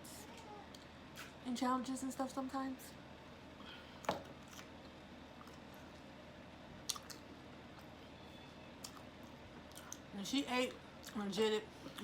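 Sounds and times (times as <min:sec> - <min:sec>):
quiet chewing: 0:04.0 - 0:06.1, 0:06.8 - 0:08.0, 0:08.8 - 0:10.1.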